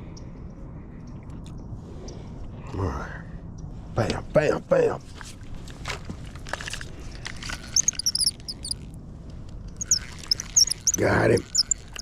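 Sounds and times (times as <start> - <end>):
sharp clicks: 7.4 - 8.8, 9.7 - 12.0
small birds chirping: 7.4 - 9.0, 9.6 - 12.0.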